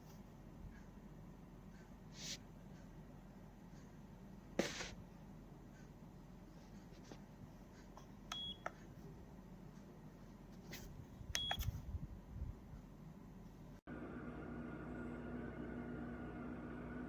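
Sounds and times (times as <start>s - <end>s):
button press clicks: 11.4s - 11.8s.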